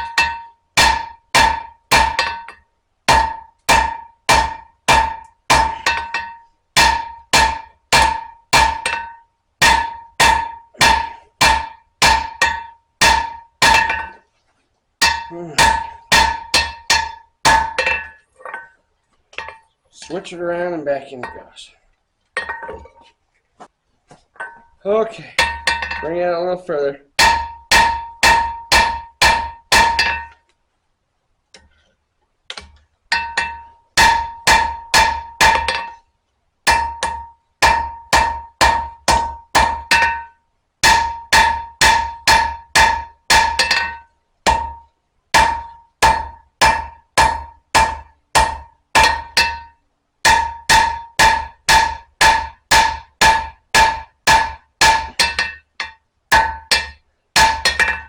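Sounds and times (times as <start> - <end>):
hammer ringing on anvil: 36.7 - 58.0.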